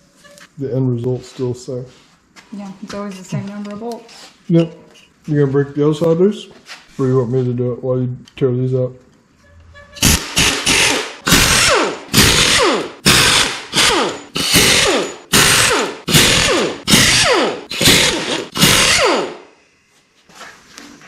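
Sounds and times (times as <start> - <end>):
cordless power tool bursts: 10.0 - 19.5.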